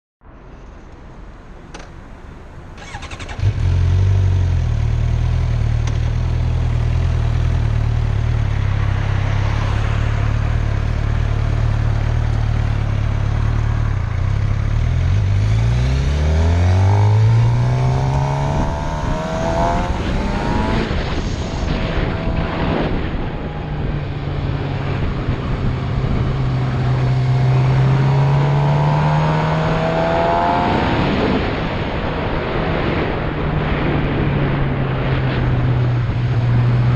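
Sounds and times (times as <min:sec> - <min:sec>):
vehicle engine accelerating: 0:02.8 - 0:32.3
wind noise on microphone: 0:16.4 - 0:36.9.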